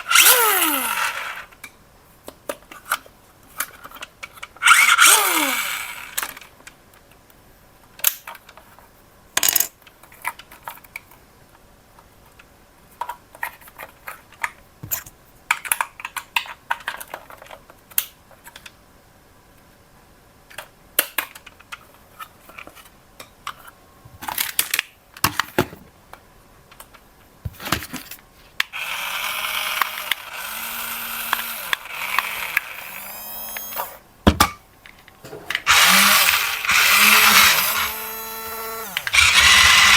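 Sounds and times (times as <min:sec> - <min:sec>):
small electric motor whirring: 0:00.0 - 0:01.4, 0:04.6 - 0:06.2, 0:28.8 - 0:34.0, 0:35.6 - 0:39.9
plastic toy clicks and knocks: 0:09.4 - 0:10.8.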